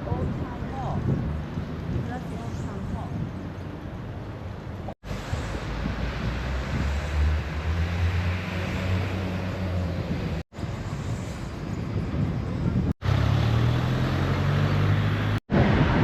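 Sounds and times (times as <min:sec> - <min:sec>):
road noise: 0:00.0 - 0:16.0
vehicle engine humming: 0:03.6 - 0:15.4.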